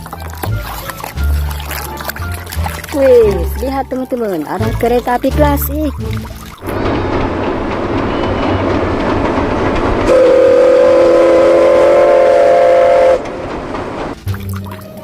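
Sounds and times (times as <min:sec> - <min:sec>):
train wheels rattling on rails: 0:06.6 - 0:14.3
train whistle chord: 0:10.1 - 0:13.3.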